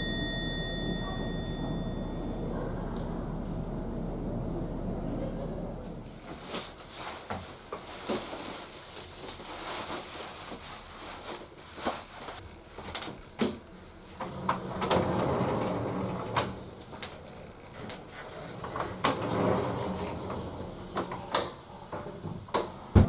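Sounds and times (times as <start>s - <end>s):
rustling: 5.8s - 13.1s.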